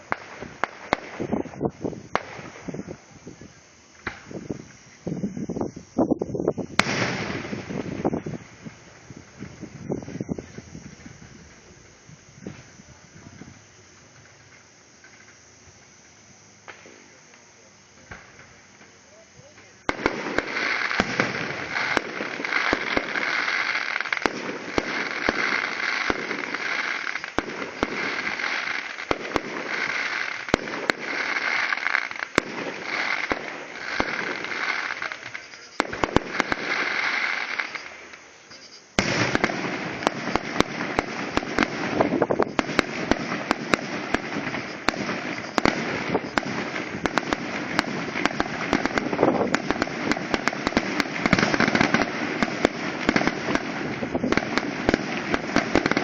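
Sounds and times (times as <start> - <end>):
fireworks crackling and popping: 0.0 - 56.0.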